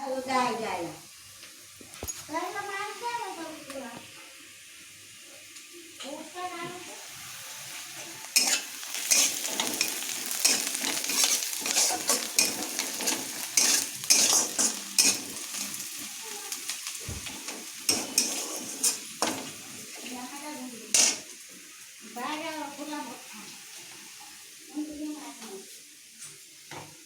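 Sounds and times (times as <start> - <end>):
food sizzling: 0.0 - 27.0
utensil scraping in a pan: 7.3 - 16.2, 17.0 - 20.2.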